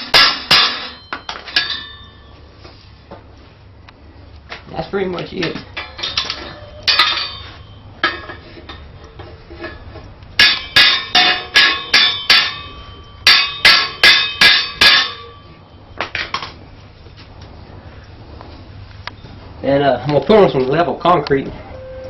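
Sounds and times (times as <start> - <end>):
hammer striking steel: 0.0 - 2.2, 5.8 - 8.8, 10.4 - 16.4.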